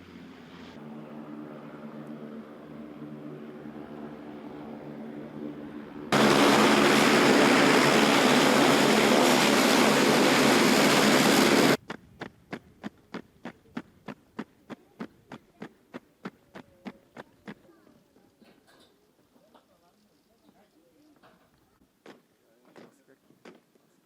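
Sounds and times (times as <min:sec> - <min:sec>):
aircraft engine noise: 0:00.0 - 0:11.8.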